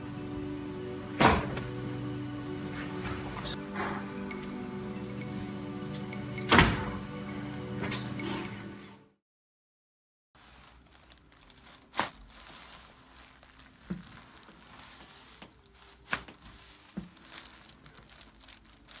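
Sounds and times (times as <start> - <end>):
faint rustling and crinkling: 10.4 - 19.0.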